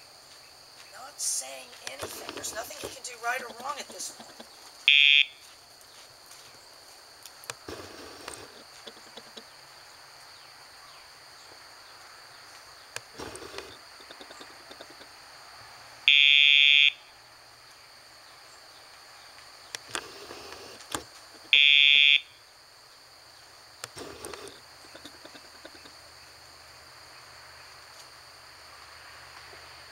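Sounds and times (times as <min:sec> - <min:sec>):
pager collar buzzing: 0:07.5 - 0:09.2, 0:13.0 - 0:13.9, 0:23.8 - 0:24.6.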